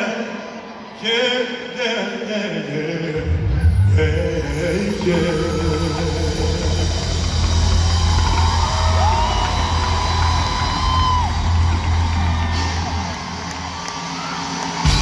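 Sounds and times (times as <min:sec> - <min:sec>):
crowd cheering and whooping: 0:05.1 - 0:15.0
whistles: 0:08.3 - 0:11.5.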